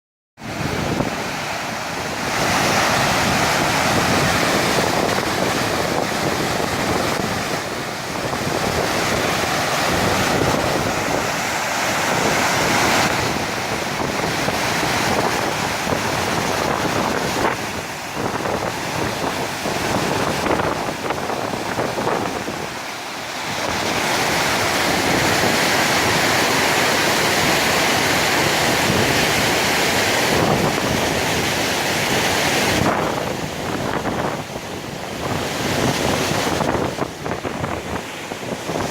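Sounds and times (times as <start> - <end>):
floodwater rushing: 0.4 - 38.9.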